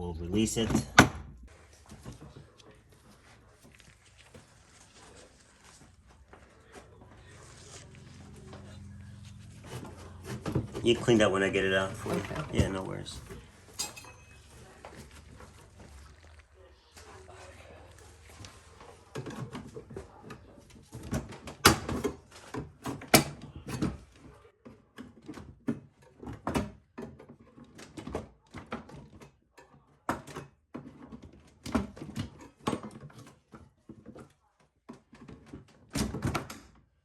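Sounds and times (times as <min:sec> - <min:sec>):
plastic parts knocking and rattling: 0:09.6 - 0:14.0, 0:18.4 - 0:36.9.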